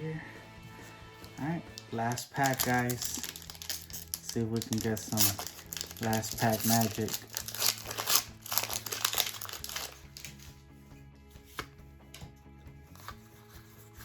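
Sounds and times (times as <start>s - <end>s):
soft background music: 0.0s - 14.0s
foil pack crinkling and tearing: 1.8s - 10.5s.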